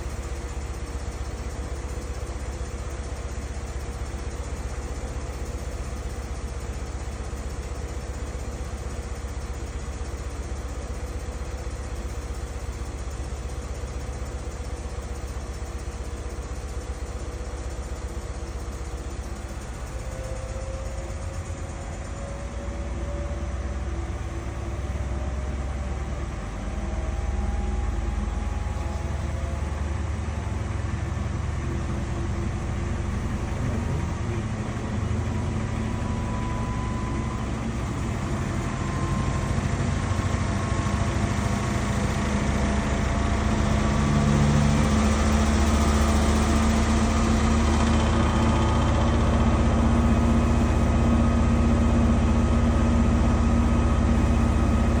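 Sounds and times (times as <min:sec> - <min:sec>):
washing machine motor whining: 0:19.3 - 0:55.0.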